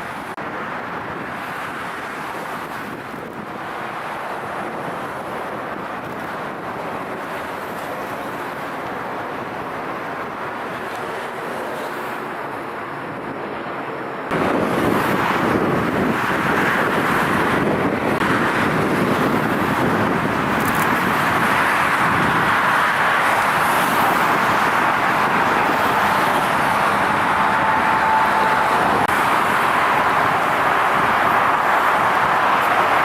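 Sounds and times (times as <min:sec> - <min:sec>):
jet engine rushing: 0:00.0 - 0:33.0
faint whine: 0:25.5 - 0:29.1.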